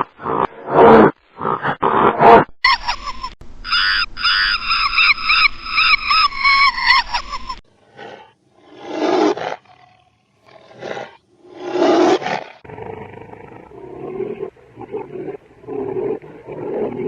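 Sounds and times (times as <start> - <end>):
big cat roaring: 7.8 - 17.0
low rough growling: 7.8 - 17.0.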